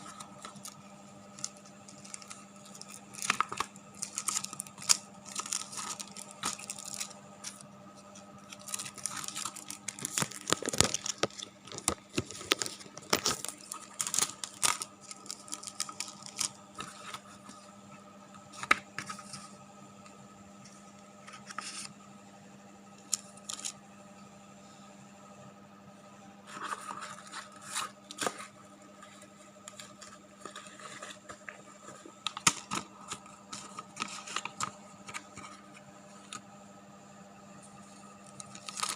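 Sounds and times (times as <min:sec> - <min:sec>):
material tearing and crinkling: 0:00.0 - 0:17.5, 0:38.4 - 0:38.9.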